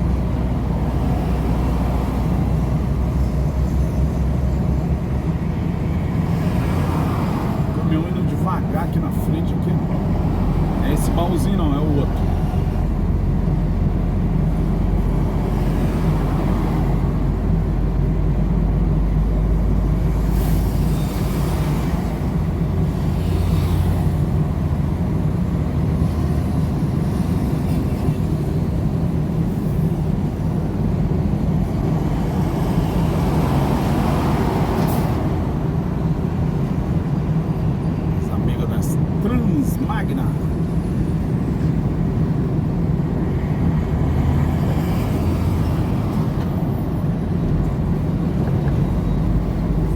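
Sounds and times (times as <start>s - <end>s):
road noise: 0.0s - 49.9s
truck engine drone: 0.0s - 49.9s.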